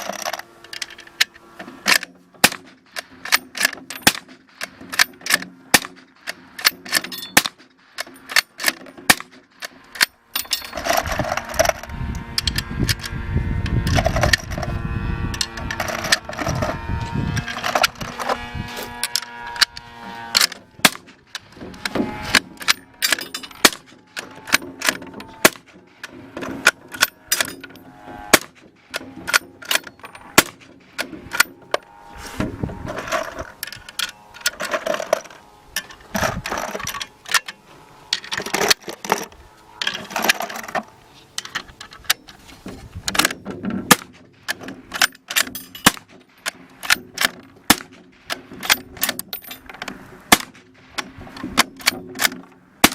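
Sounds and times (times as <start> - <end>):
suppressed gunshots: 2.4 - 3.4, 30.3 - 30.8.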